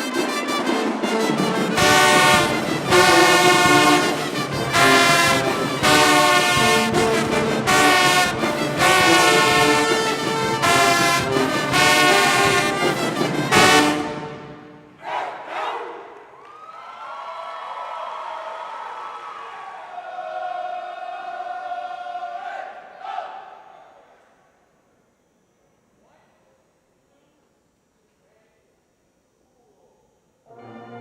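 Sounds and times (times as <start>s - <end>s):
brass section playing: 0.0s - 15.2s
drums: 0.8s - 14.8s.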